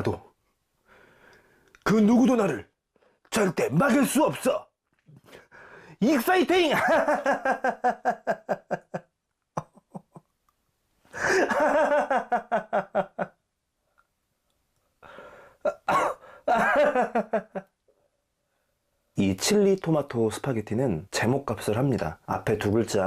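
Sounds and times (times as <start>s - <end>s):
person laughing: 6.7s - 10.3s, 11.1s - 13.4s, 15.7s - 17.7s.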